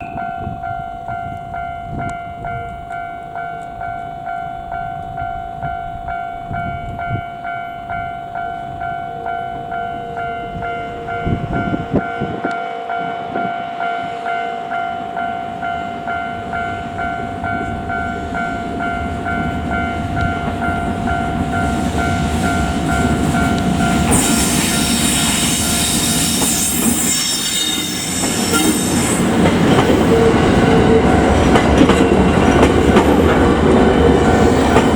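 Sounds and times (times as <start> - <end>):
approaching train noise: 0.0 - 34.9
level-crossing warning bell: 0.0 - 34.9.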